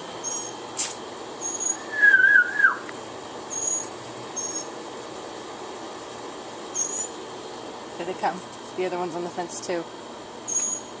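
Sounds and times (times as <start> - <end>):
wavering whistled bird note: 1.4 - 2.9.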